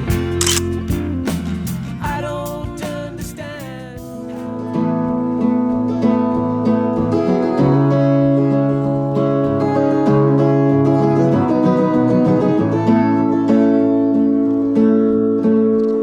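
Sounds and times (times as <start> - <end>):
acoustic guitar strumming chords: 0.0 - 16.0.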